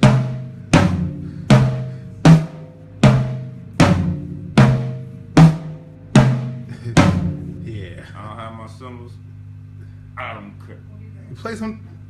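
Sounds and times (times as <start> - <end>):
drum toms struck: 0.0 - 8.2.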